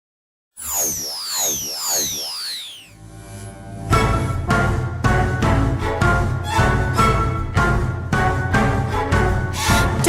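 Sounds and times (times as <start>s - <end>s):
electronic sweeping sound effect: 0.6s - 3.8s.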